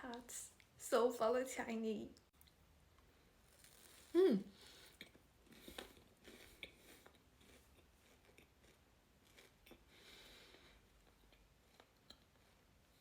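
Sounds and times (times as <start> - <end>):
crispy treat being chewed: 2.3 - 4.2, 4.8 - 13.0.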